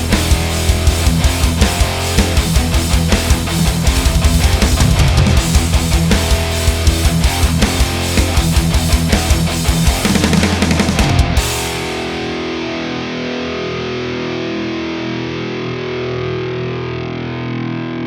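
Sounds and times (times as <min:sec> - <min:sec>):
distorted electric guitar riff: 0:00.0 - 0:18.0.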